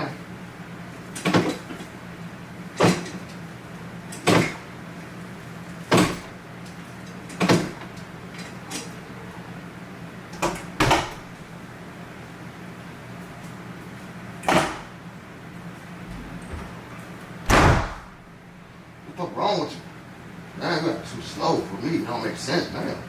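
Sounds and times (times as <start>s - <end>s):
loud bangs of household things: 10.8s - 11.4s, 17.5s - 18.4s.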